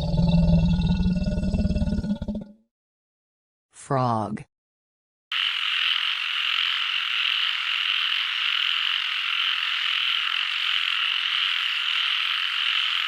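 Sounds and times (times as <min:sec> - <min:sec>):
frogs chorus: 0:05.3 - 0:13.0.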